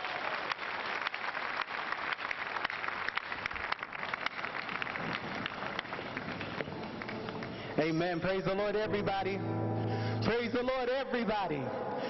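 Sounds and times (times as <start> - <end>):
crowd applauding: 0.0 - 8.4.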